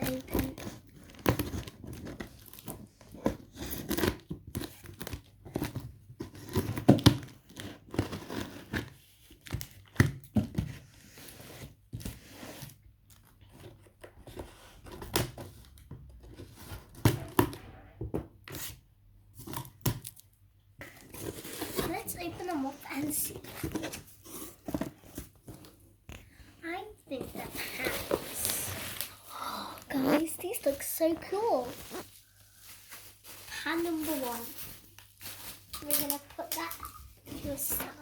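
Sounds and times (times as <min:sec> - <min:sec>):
packaging crinkling: 0:27.5 - 0:36.8.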